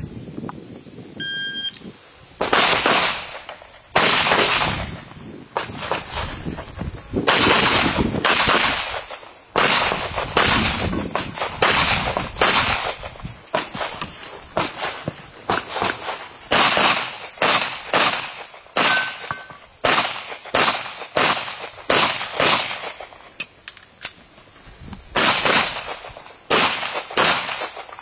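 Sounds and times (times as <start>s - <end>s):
shot timer beep: 1.2s - 1.8s
handgun shots echoing: 15.5s - 23.5s.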